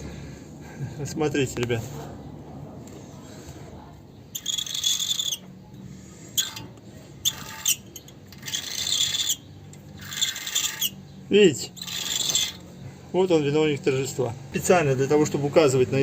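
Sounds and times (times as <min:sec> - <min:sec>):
metal tab scraping brake disc: 0:04.4 - 0:05.6, 0:06.3 - 0:11.1, 0:11.7 - 0:12.8.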